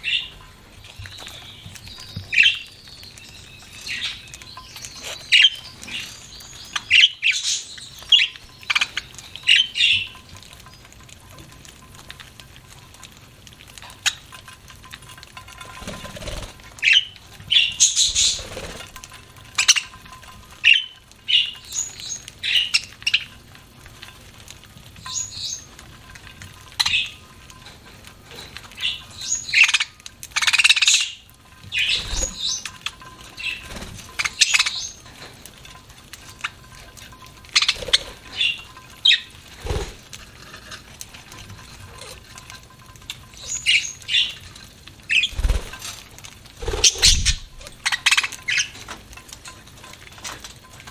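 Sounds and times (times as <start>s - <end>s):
budgerigars chirping and squawking: 0.0s - 10.2s, 15.8s - 18.9s, 19.6s - 20.0s, 20.6s - 23.3s, 26.8s - 27.2s, 28.8s - 35.1s, 37.4s - 40.0s, 43.3s - 44.4s, 45.1s - 45.7s, 46.6s - 48.9s.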